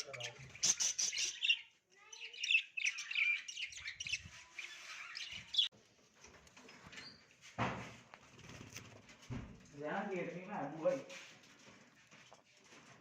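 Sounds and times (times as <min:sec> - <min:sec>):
budgerigars chirping and chattering: 0:00.0 - 0:05.7
thump: 0:07.6 - 0:08.0, 0:09.2 - 0:09.7.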